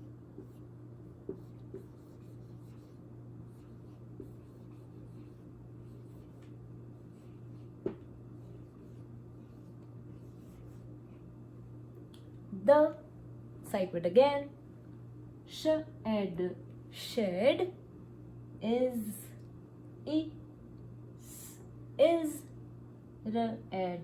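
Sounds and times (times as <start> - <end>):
faint writing sounds: 0.0 - 11.4
low electrical hum: 0.0 - 24.0.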